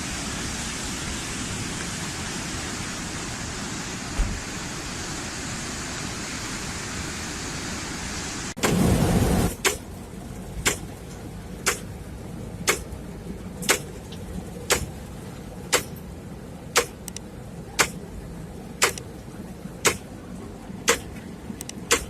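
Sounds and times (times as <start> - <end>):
low steady rumble: 8.6 - 22.0
sharp clicks: 9.6 - 9.8, 10.6 - 10.9, 11.6 - 11.9, 12.7 - 12.9, 13.6 - 14.0, 14.7 - 15.0, 16.8 - 17.2, 17.8 - 18.0, 18.8 - 19.1, 19.8 - 20.0, 20.9 - 22.0.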